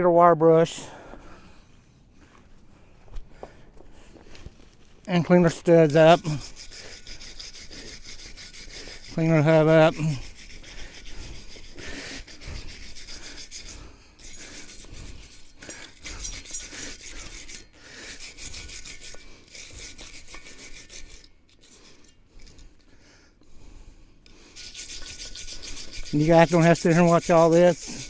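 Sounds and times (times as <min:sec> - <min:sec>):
wire brush scraping metal: 0:05.1 - 0:22.6, 0:24.3 - 0:28.0.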